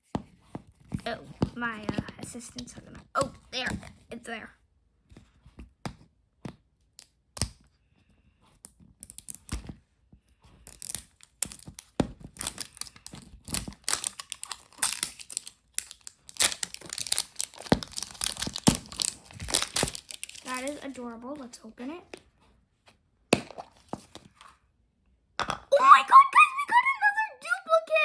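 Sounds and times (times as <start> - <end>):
plastic wrapper crinkling and tearing: 10.7 - 21.0.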